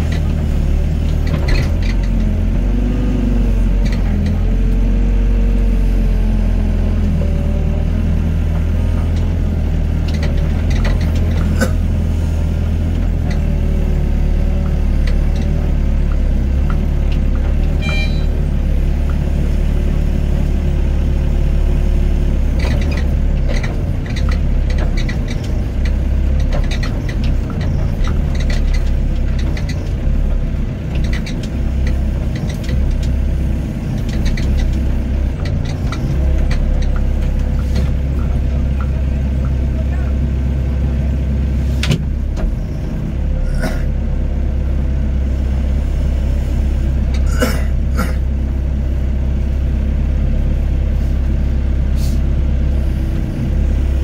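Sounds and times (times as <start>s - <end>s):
excavator diesel engine rumbling: 0.0s - 54.0s
brief high squeal: 17.8s - 18.3s.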